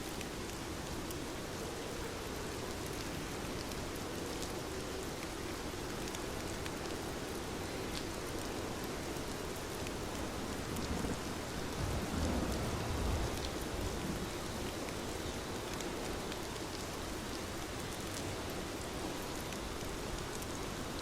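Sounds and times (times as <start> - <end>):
rain drops ticking: 0.0 - 21.0
heavy rain falling: 1.6 - 21.0
low rumble of thunder: 10.8 - 14.6.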